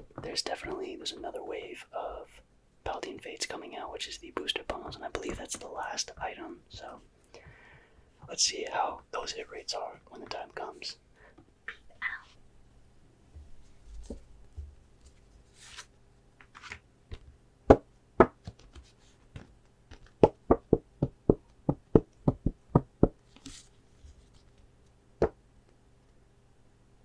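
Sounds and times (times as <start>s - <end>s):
gloved fingers tapping packaging: 19.4s - 23.2s.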